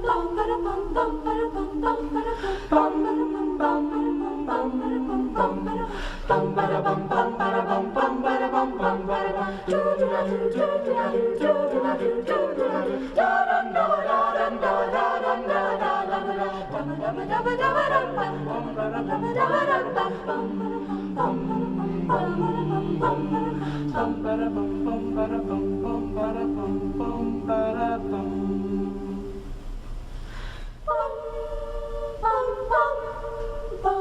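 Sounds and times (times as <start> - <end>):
choir singing a cappella: 0.0 - 29.6, 30.8 - 34.0.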